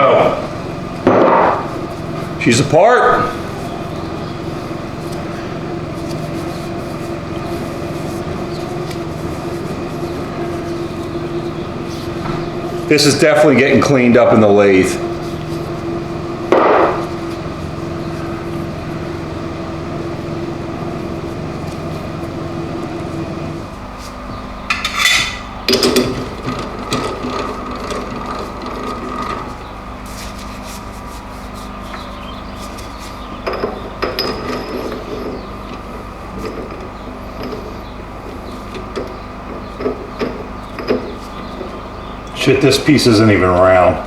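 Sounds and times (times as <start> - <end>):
steady machine hum: 0.0 - 44.0
metal parts clunking and scraping: 24.4 - 29.6, 33.4 - 37.7.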